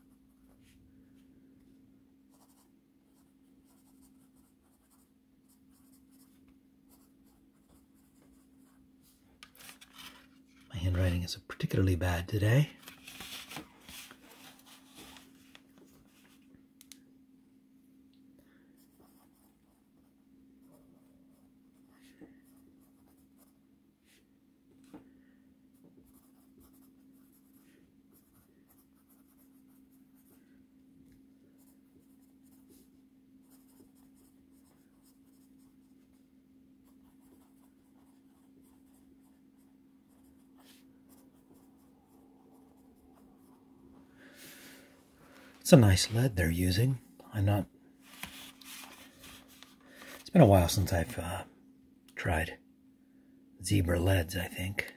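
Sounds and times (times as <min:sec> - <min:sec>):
steady low hum: 0:00.0 - 0:54.9
pencil scratching on paper: 0:02.3 - 0:08.8, 0:26.0 - 0:30.5, 0:31.6 - 0:36.2, 0:36.8 - 0:43.6.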